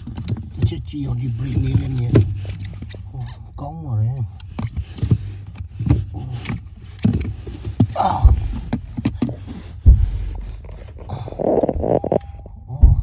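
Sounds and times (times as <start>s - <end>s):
steady low hum: 0.0s - 13.0s
heavy thumps: 4.4s - 13.0s
hands clicking and knocking: 4.5s - 13.0s.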